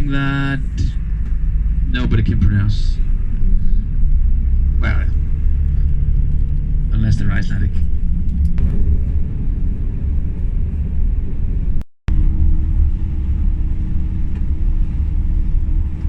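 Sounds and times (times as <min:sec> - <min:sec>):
bus engine and road rumble: 0:00.0 - 0:16.0.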